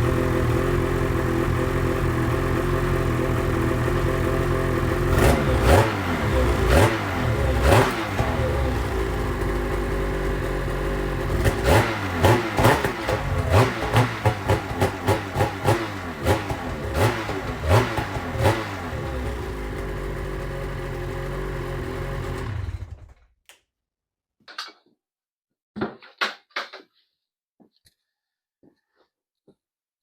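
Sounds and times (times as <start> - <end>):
snowmobile engine revving and idling: 0.0 - 23.2.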